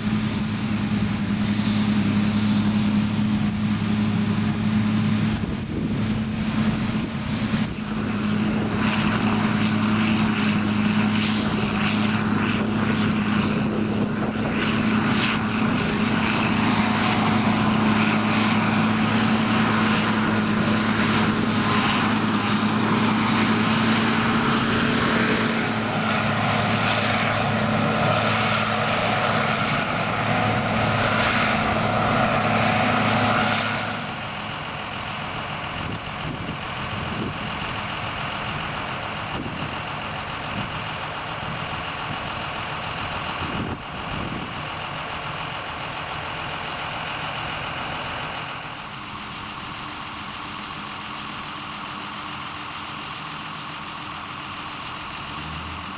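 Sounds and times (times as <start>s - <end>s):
diesel machinery engine drone: 0.0s - 55.9s
engine knocks: 29.0s - 55.9s.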